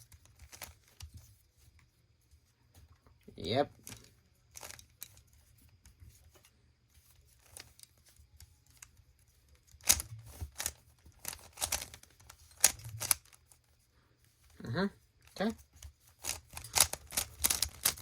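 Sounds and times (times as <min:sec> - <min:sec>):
puzzle cube layers clicking: 0:09.8 - 0:13.3, 0:16.2 - 0:18.0.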